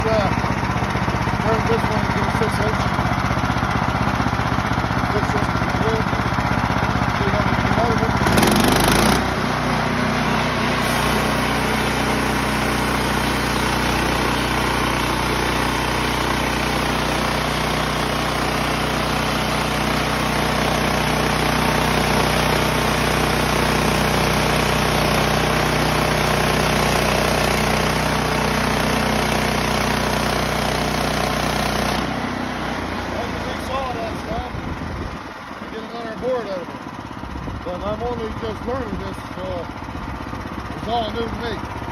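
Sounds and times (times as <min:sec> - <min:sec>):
bandsaw sawmill engine under load: 0:00.0 - 0:41.9
band blade cutting log: 0:08.2 - 0:09.4.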